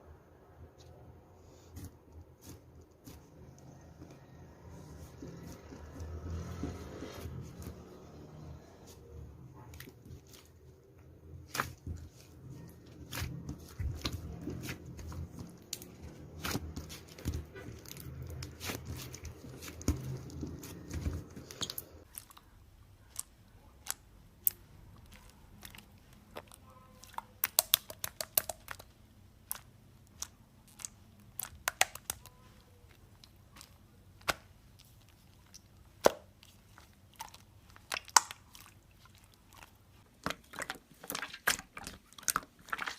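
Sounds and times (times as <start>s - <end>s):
chewing and crunching: 11.6s - 34.0s, 34.6s - 42.9s.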